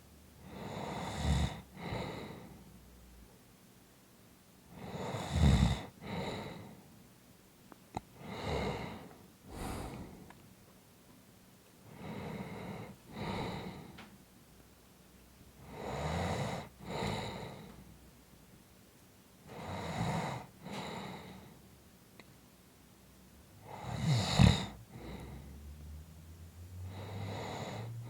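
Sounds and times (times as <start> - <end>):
person snoring: 4.8 - 6.5, 8.2 - 10.3, 23.7 - 25.7, 26.8 - 28.0.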